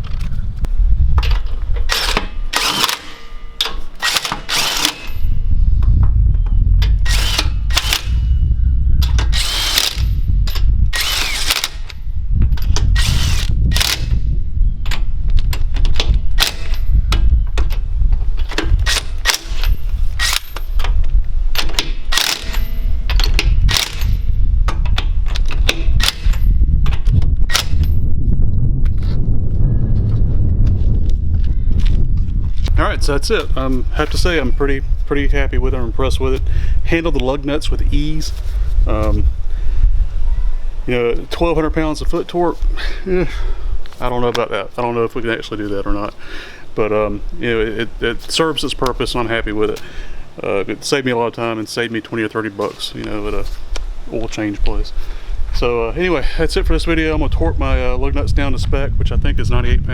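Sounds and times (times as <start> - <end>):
impact wrench hammering: 1.9 - 5.2
low rumble: 4.6 - 42.0.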